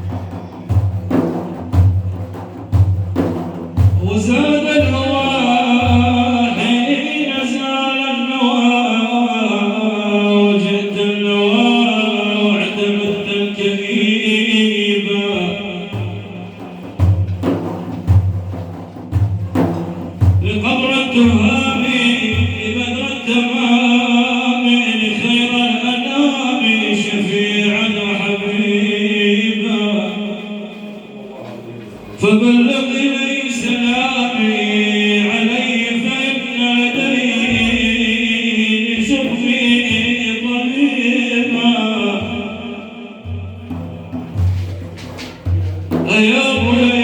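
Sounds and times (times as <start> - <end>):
deep drum beats: 0.0 - 7.6, 15.0 - 26.1, 35.2 - 47.0
man chanting a praise song: 3.8 - 17.2, 20.2 - 47.0
sustained singing voice: 4.0 - 17.0, 20.4 - 44.8, 45.9 - 47.0.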